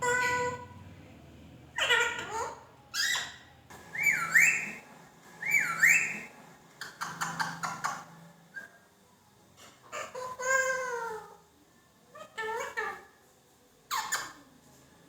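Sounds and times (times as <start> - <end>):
parrot squawky calls: 0.0 - 0.8, 1.7 - 4.8, 5.4 - 8.1, 9.8 - 11.4
parrot whistling: 1.8 - 4.8, 5.4 - 7.9.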